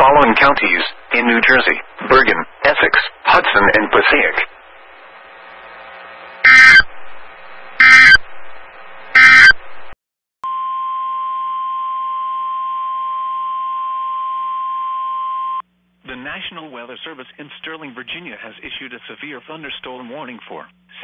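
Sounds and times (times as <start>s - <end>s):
alert data bursts: 5.5s - 6.9s, 7.8s - 8.2s, 9.1s - 9.6s.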